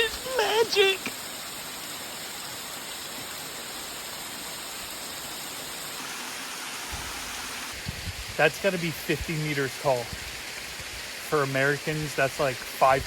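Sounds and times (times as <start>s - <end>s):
waterfall rushing: 0.0s - 1.2s, 5.7s - 7.8s.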